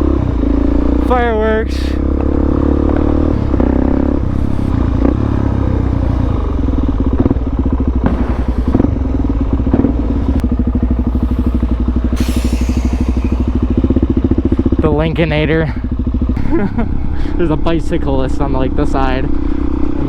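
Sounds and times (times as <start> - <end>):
motorcycle engine running: 0.0 - 20.0
sharp engine pops: 7.9 - 10.5.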